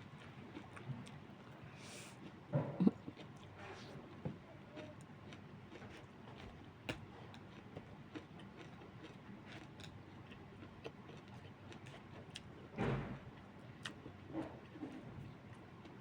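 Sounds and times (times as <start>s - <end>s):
chewing clicks: 4.8s - 12.5s.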